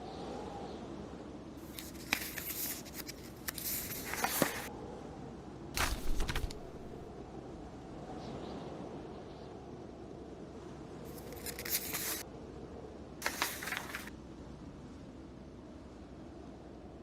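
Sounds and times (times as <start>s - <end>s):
blizzard wind hissing: 0.0s - 5.8s, 6.5s - 14.2s
paper pages rustling: 1.6s - 4.7s, 5.8s - 7.1s, 11.1s - 12.2s, 13.2s - 14.1s.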